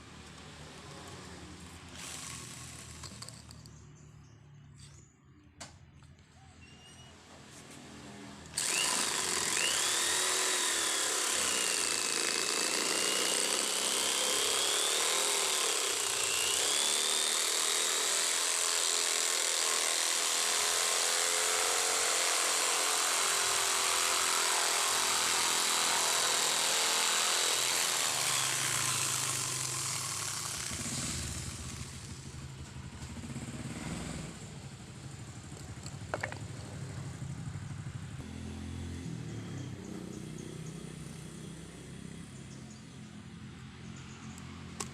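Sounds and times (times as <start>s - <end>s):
power tool motor whine: 1.0s - 3.6s, 7.5s - 32.3s.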